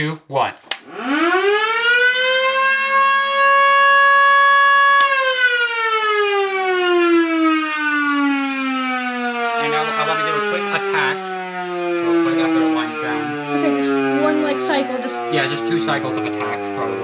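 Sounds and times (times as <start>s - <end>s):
siren wailing: 0.8s - 17.0s
switch click: 5.0s - 5.2s.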